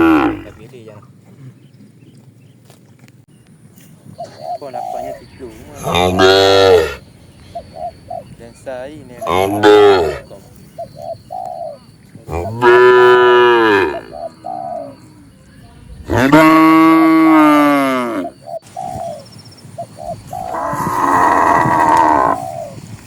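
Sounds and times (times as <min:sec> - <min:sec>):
cattle mooing: 0:00.0 - 0:00.5, 0:05.8 - 0:07.0, 0:09.2 - 0:10.2, 0:12.3 - 0:14.2, 0:20.4 - 0:22.4
dove cooing: 0:04.2 - 0:08.4, 0:09.2 - 0:15.3, 0:16.1 - 0:22.9.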